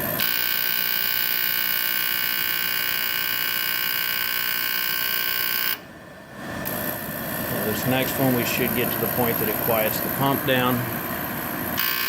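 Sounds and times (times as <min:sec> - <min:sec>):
high-pitched alarm buzzer: 0:00.0 - 0:05.8, 0:11.8 - 0:12.0.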